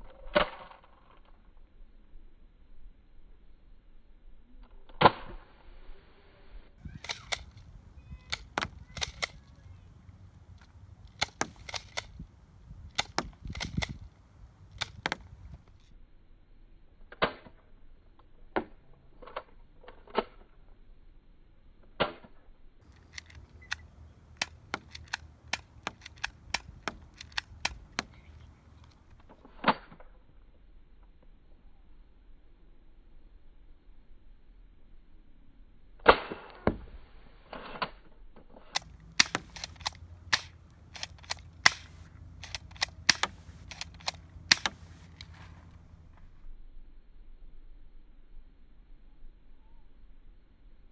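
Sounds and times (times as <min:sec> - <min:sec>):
airsoft guns firing sharp pops: 0:38.8 - 0:45.5.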